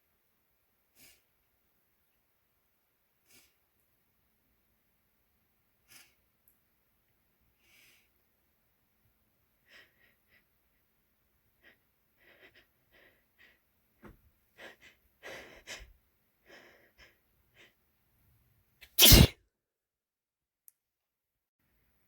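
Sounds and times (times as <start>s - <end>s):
faint snuffly noises: 0.9s - 1.3s, 3.2s - 3.7s, 5.8s - 6.2s, 18.8s - 19.3s
loud wet sneeze: 18.8s - 19.3s.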